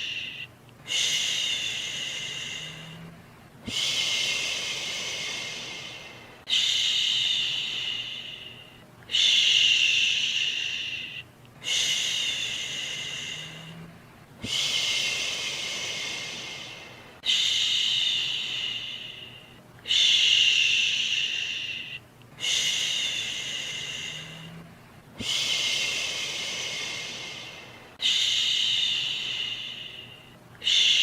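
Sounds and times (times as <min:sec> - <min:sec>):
person shushing: 0:00.0 - 0:31.0.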